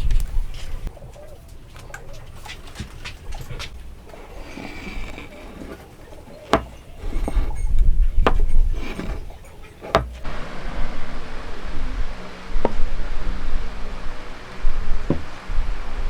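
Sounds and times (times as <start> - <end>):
mallet knocks on wood: 9.8 - 10.3.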